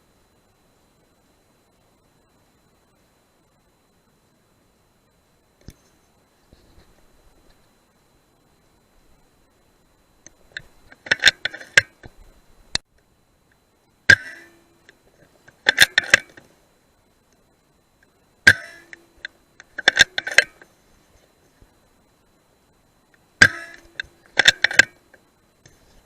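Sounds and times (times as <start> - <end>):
quick sharp clicks: 10.2 - 12.1, 18.4 - 20.7, 23.4 - 25.8
rifle shots: 18.4 - 19.0, 23.4 - 25.0.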